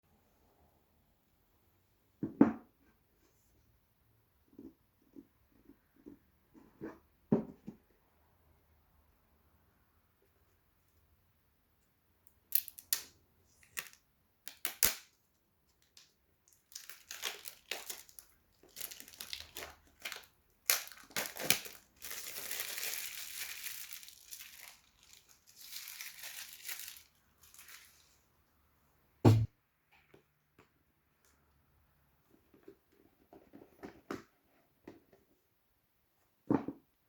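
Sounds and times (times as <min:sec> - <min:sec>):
packaging crinkling: 0:15.9 - 0:28.2.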